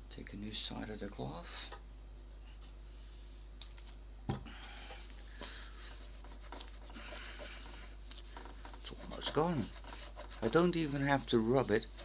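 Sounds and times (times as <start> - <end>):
cloth rubbing on plastic case: 5.9 - 12.0.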